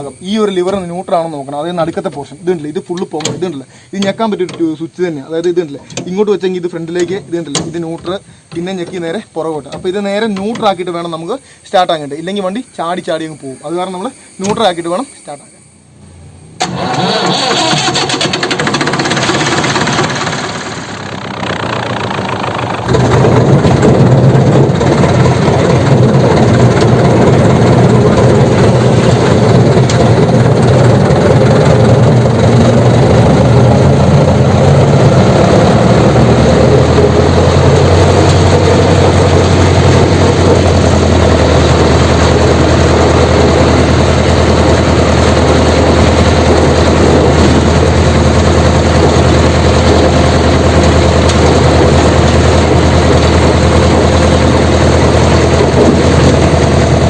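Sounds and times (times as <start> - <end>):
road roller diesel engine idling: 16.6 - 57.0.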